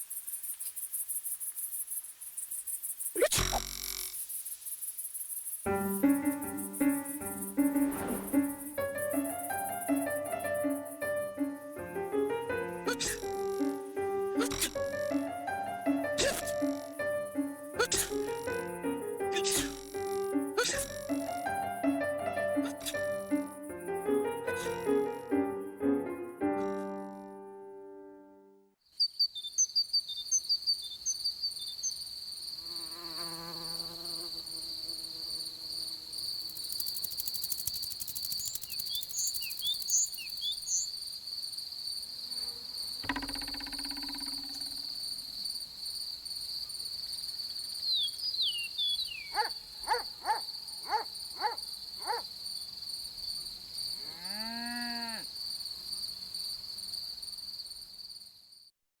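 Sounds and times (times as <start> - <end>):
cricket trill: 0.0 - 27.0, 28.8 - 58.7
knock: 43.0 - 44.7.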